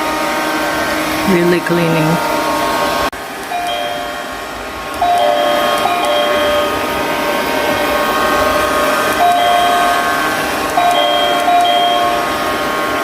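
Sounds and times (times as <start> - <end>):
robot vacuum cleaner whining: 0.0 - 13.0.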